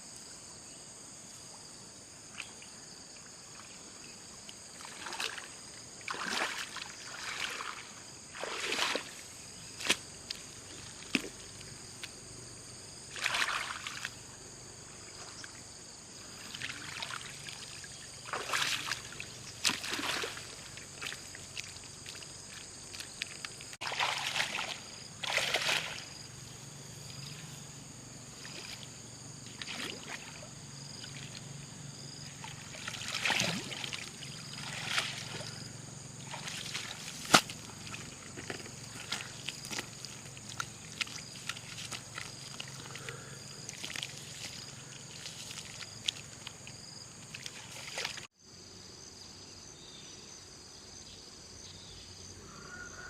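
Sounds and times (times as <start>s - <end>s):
water sloshing and splashing: 4.7s - 12.2s, 13.0s - 14.2s, 16.4s - 26.3s, 28.4s - 31.5s, 32.2s - 48.3s.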